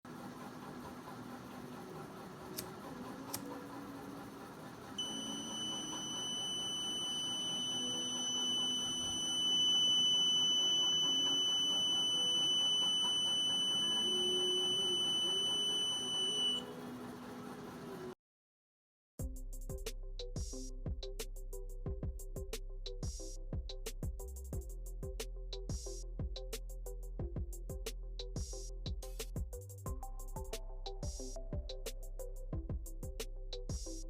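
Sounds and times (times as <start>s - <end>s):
high-pitched buzzer beep: 5.0s - 16.6s.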